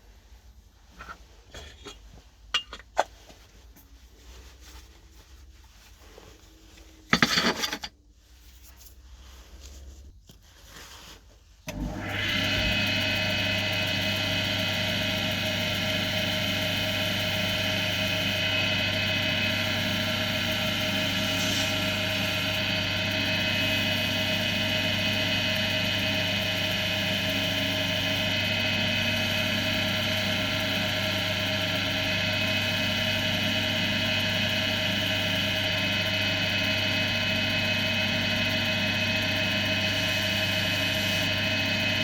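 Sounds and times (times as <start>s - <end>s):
wood lathe humming: 11.7s - 42.0s.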